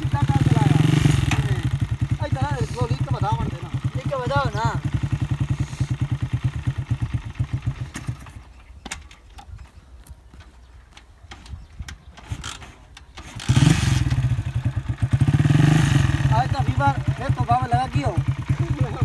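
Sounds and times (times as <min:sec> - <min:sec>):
motorcycle engine idling: 0:00.0 - 0:08.8, 0:13.2 - 0:19.0.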